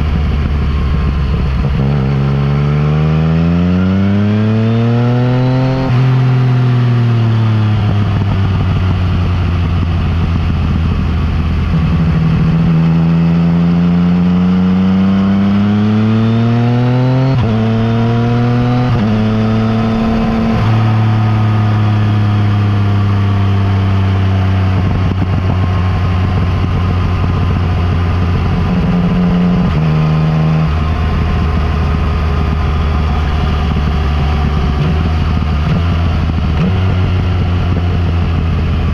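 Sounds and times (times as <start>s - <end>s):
motorcycle engine revving: 0.0s - 38.9s
rushing wind noise: 16.0s - 38.9s.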